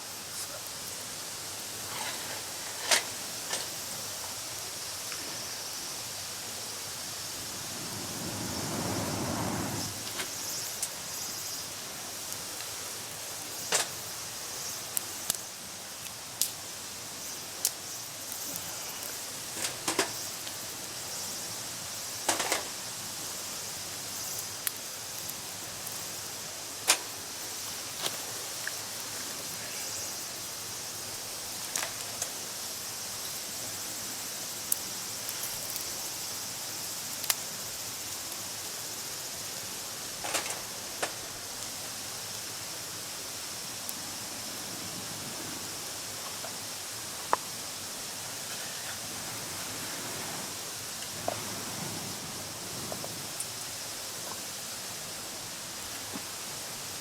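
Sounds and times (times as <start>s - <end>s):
campfire crackling and popping: 12.1s - 16.6s, 17.2s - 20.6s, 37.2s - 37.5s.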